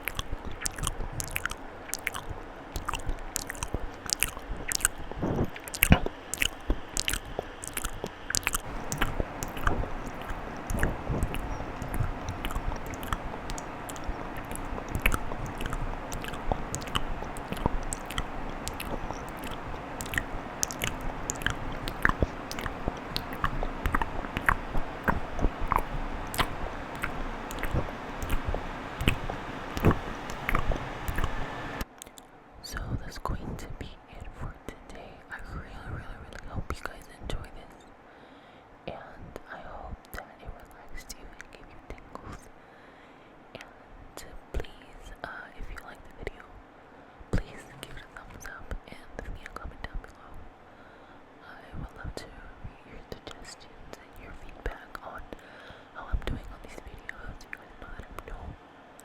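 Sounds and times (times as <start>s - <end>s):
tongue and lip clicks: 0.0s - 32.3s, 47.4s - 50.2s, 53.0s - 55.4s.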